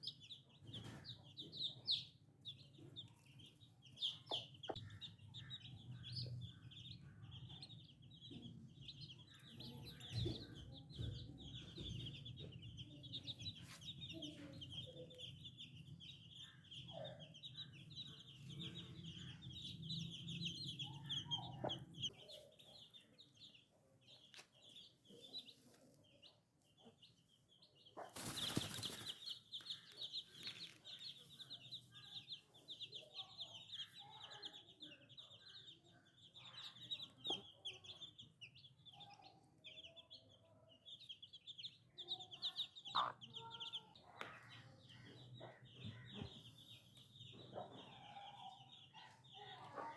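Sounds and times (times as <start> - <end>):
baby chicks peeping: 0.0 - 49.9
hen clucking: 42.9 - 43.2.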